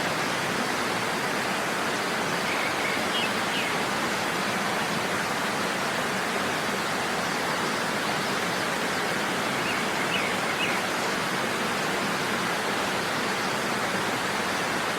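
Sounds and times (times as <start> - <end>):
waterfall rushing: 0.0 - 14.9.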